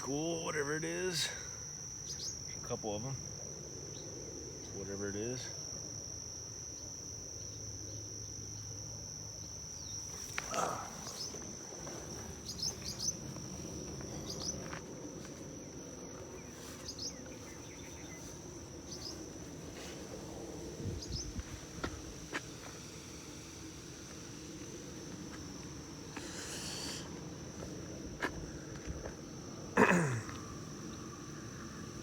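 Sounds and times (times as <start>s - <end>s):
crickets trilling: 0.0s - 32.0s.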